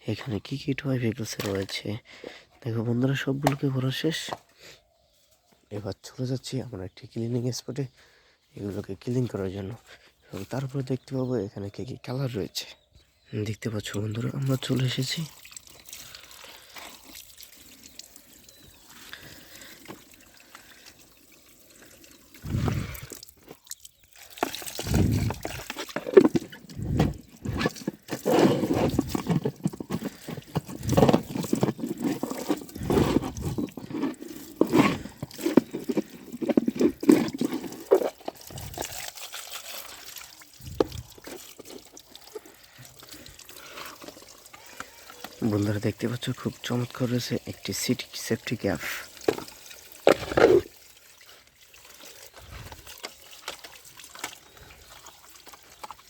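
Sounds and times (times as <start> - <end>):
water pouring and splashing: 13.8 - 56.0.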